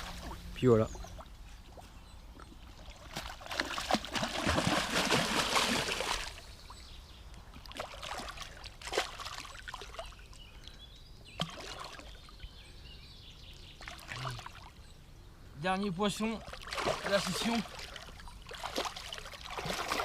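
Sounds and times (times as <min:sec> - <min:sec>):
water pouring and splashing: 0:02.7 - 0:06.4, 0:16.4 - 0:20.0.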